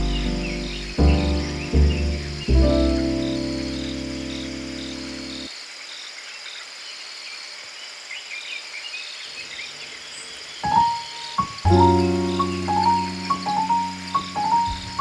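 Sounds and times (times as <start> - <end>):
relaxation music: 0.0 - 5.5, 10.7 - 15.0
insects chirping: 0.0 - 15.0.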